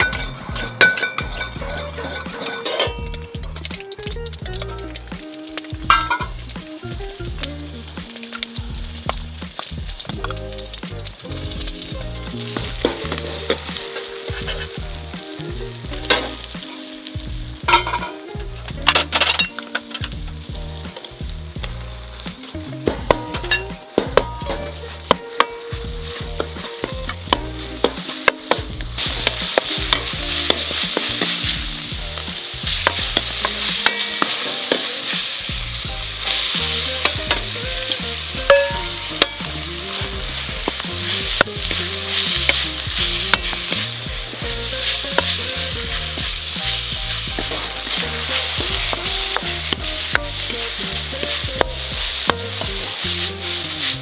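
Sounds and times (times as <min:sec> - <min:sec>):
food sizzling in a pan: 0:00.0 - 0:54.0
utensil clicking against pan: 0:15.3 - 0:54.0.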